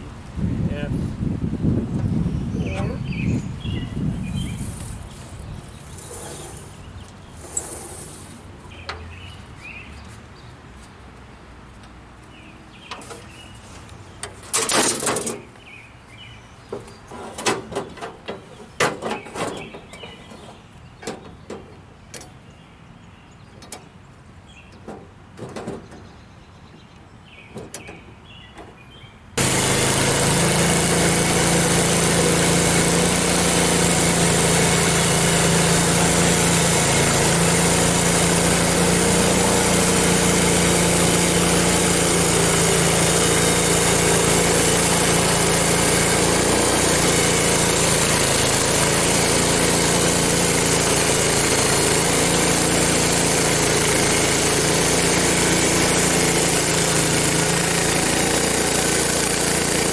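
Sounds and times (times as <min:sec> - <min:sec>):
small gasoline engine running: 0:29.4 - 0:59.9.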